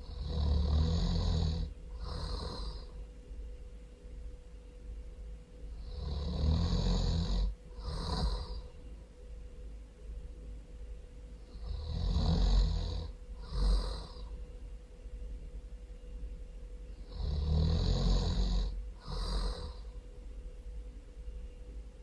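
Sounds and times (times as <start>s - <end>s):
person snoring loudly: 0.0s - 3.0s, 5.8s - 8.6s, 11.5s - 14.3s, 17.1s - 19.9s.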